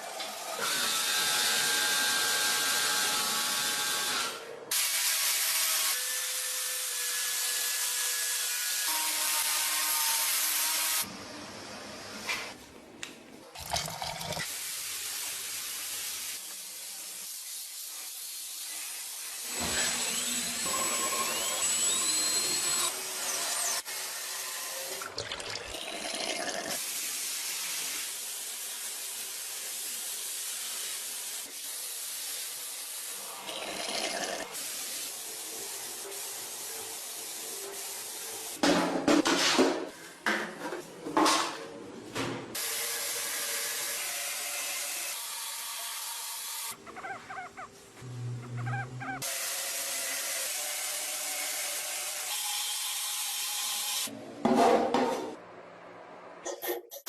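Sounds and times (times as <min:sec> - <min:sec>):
steady hissing spray: 0:14.5 - 0:19.4, 0:26.8 - 0:33.3, 0:34.6 - 0:38.6.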